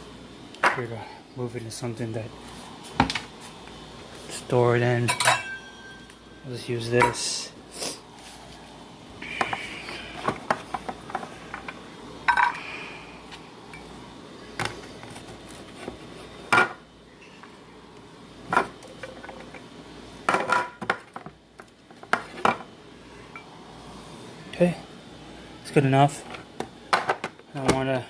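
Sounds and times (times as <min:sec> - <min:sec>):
kitchenware clattering: 0:05.0 - 0:06.0, 0:06.9 - 0:07.3, 0:12.3 - 0:12.6, 0:20.3 - 0:21.0.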